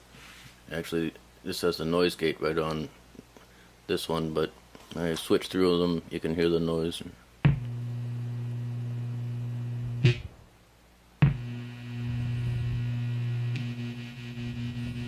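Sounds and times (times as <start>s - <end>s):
guitar preamp low hum: 7.4s - 10.5s, 11.2s - 15.0s.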